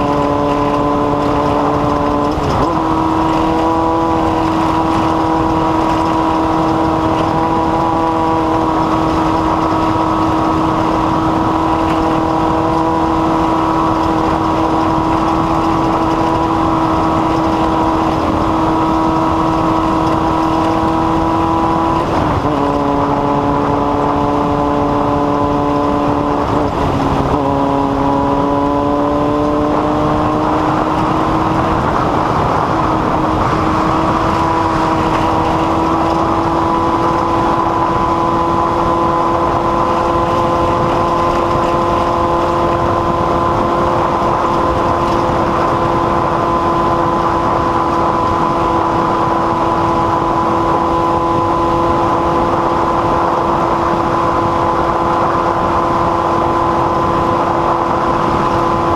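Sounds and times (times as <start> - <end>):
constant rushing noise: 0.0 - 58.9
engine running at high speed: 0.0 - 58.9.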